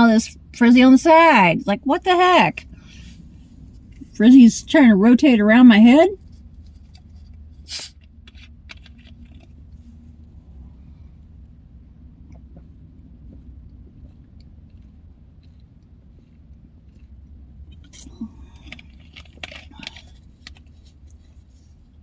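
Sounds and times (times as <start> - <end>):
steady low hum: 0.0 - 22.0
person chewing crunchy crackers: 6.2 - 10.6, 12.2 - 22.0.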